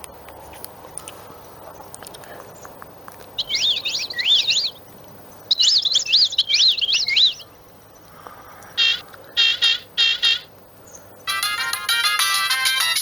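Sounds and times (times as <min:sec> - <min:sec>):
birdsong ringtone warbling chirps: 0:03.4 - 0:08.1, 0:08.7 - 0:13.0.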